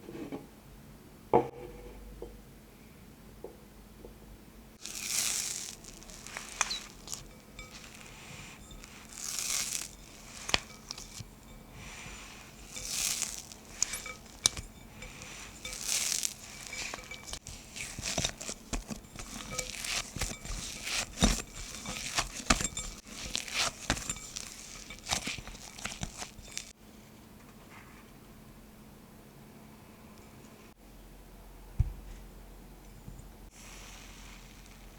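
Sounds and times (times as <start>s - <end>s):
wrapping material crinkling: 4.8s - 26.8s.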